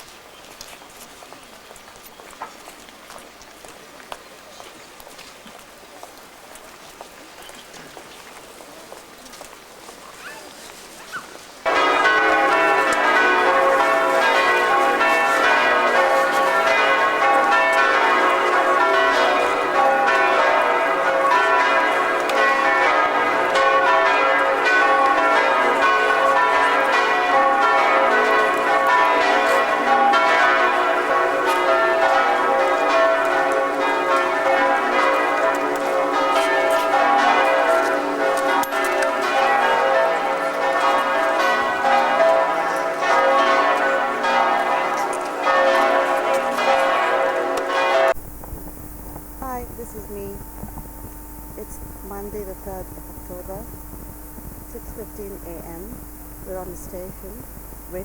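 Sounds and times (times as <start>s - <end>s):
church bells pealing: 11.6s - 58.0s.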